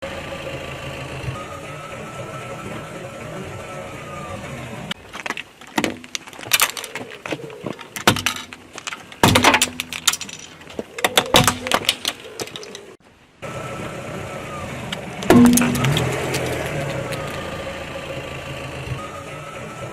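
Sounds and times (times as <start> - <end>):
car engine running: 0.0 - 5.0, 13.5 - 19.9
eyeglasses cracking and crunching: 5.1 - 13.0, 15.2 - 17.4.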